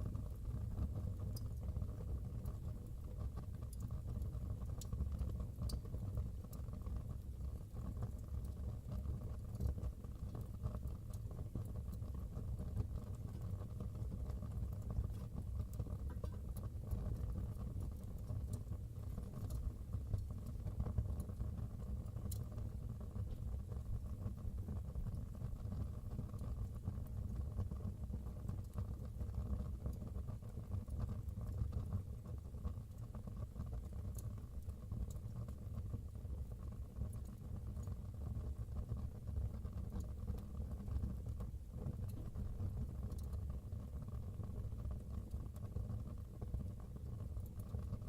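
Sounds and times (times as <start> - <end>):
fire crackling: 39.2 - 47.9.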